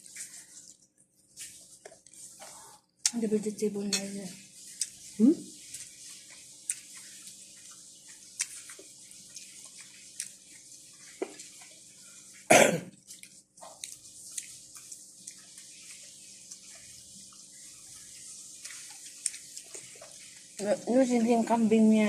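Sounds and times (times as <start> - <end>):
person coughing: 12.5 - 12.9.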